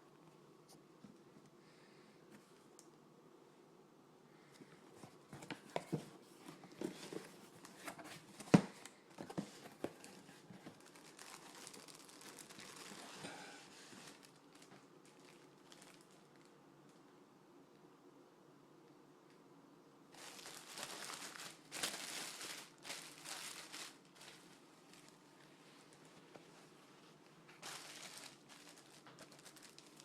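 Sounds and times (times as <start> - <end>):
packaging crackling and crinkling: 5.0 - 16.6, 20.1 - 30.0
packaging tearing and rustling: 6.6 - 16.5, 20.2 - 25.2, 27.6 - 30.0.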